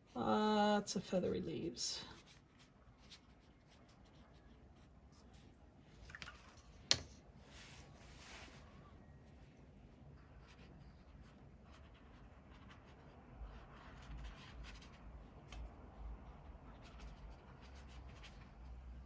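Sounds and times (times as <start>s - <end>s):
pen scratching on paper: 10.2s - 18.6s.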